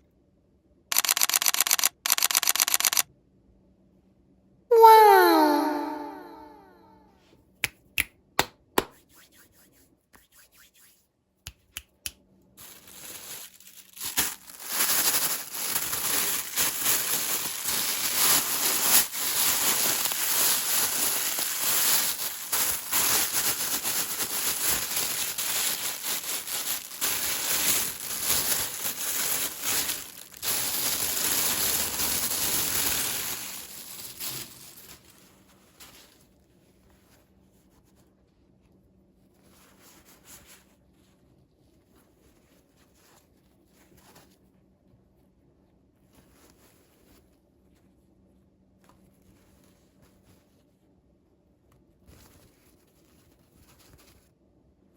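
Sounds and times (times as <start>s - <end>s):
sharp clicks: 0.9s - 3.0s
plastic packaging crinkling and tearing: 12.6s - 36.3s.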